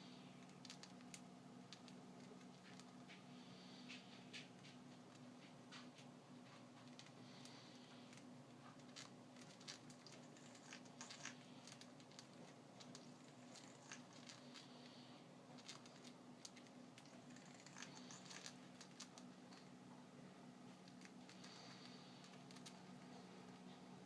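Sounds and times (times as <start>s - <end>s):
low steady hum: 0.0s - 24.0s
faint irregular clicks: 0.3s - 20.0s, 20.6s - 23.9s.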